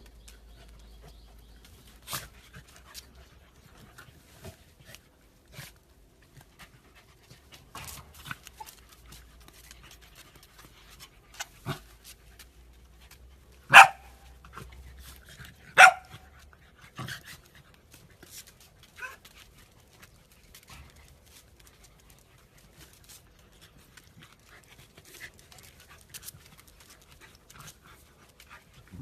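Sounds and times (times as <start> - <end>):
dog barking: 13.7 - 14.1, 15.8 - 16.2.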